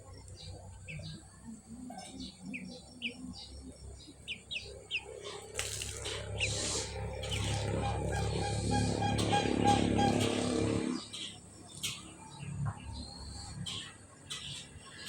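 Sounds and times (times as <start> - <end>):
small bird chirping: 0.0 - 9.3
low steady hum: 0.0 - 11.6.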